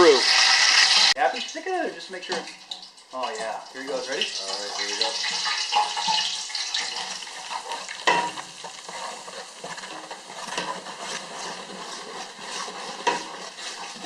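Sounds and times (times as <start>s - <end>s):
flour and oil sizzling in pan: 0.0s - 14.0s
spoon scraping pan: 3.8s - 14.0s
spoon knocking against pan: 8.0s - 8.5s.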